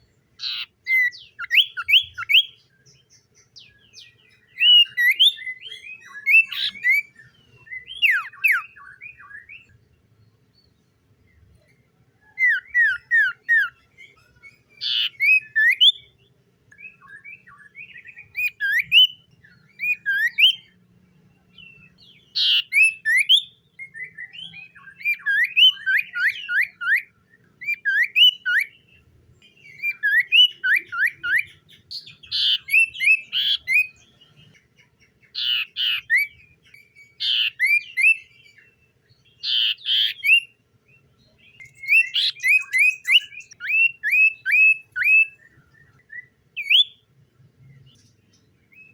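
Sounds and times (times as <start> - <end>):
bird singing whistled notes: 0.0 - 48.9.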